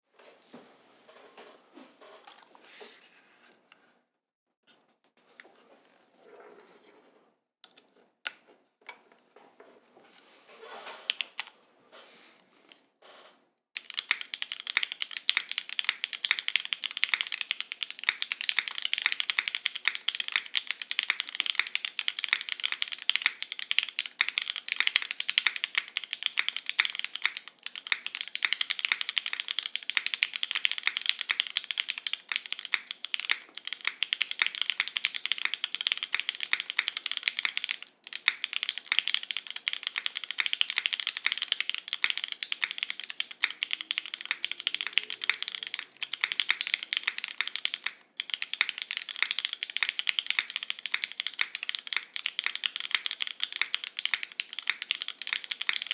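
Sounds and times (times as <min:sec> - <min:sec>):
fast typing on mechanical keyboard: 0:11.1 - 0:11.5, 0:13.8 - 0:55.9
key clicks: 0:11.1 - 0:11.5, 0:13.8 - 0:55.9.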